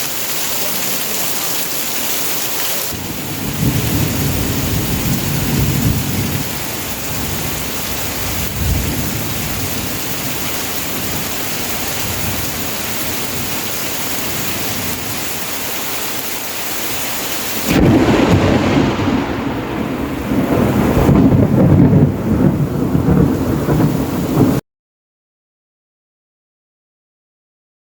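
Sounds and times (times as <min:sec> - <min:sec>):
heavy rain hissing: 0:00.0 - 0:24.6.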